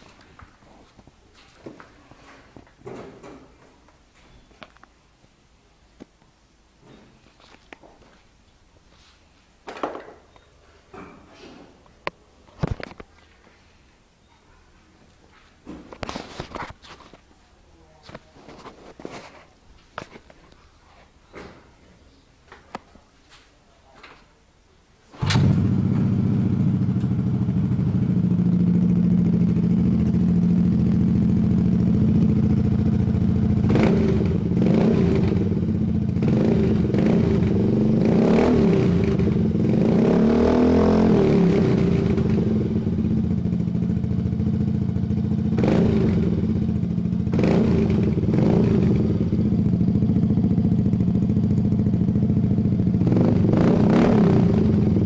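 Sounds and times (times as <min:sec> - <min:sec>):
scooter engine idling and revving: 0:25.2 - 0:55.0.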